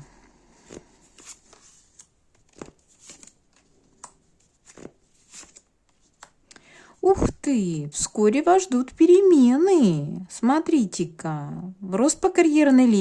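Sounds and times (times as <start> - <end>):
cards tapping and rustling: 0.6 - 6.5.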